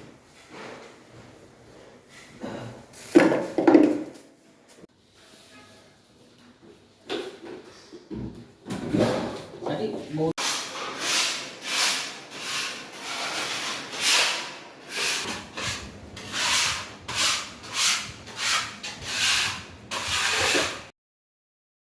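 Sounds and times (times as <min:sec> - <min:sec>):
rhythmic rubbing strokes: 0:14.9 - 0:20.9.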